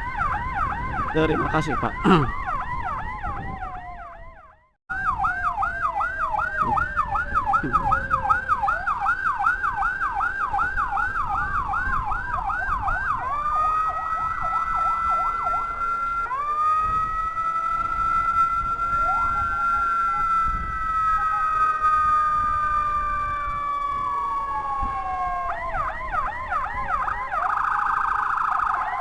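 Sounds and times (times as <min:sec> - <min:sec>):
electronic siren yelping and wailing: 0:00.0 - 0:29.0.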